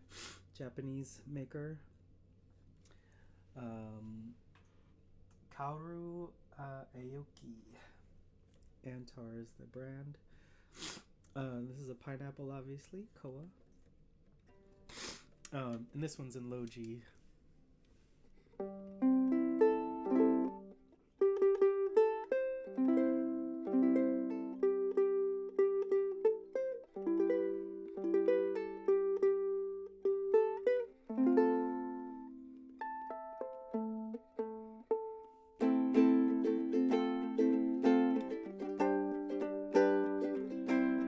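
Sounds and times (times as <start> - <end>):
ukulele playing melody and chords: 18.6 - 41.0.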